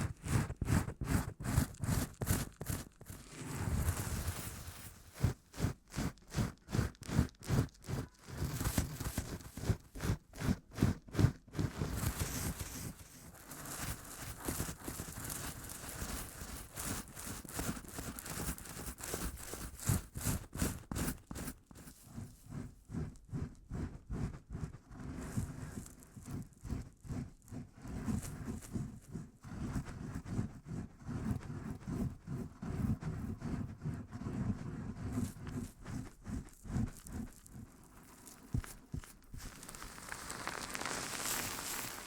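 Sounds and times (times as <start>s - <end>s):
rustling hiss: 39.4s - 42.0s.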